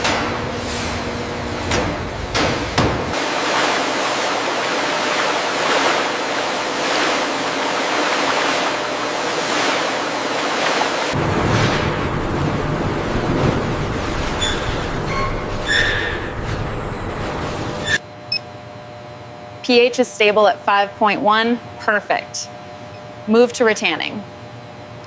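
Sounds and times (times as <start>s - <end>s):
water rushing: 3.2s - 16.4s.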